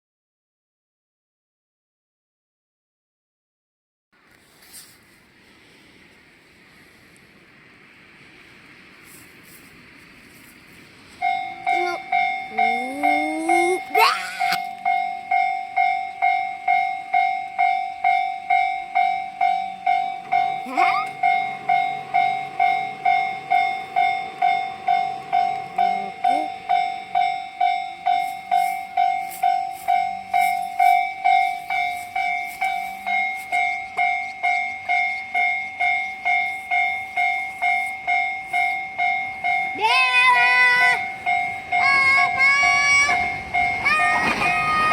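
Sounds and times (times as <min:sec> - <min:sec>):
train wheels clicking on rails: 0:04.2 - 0:44.9
level crossing bell ringing: 0:11.1 - 0:44.9.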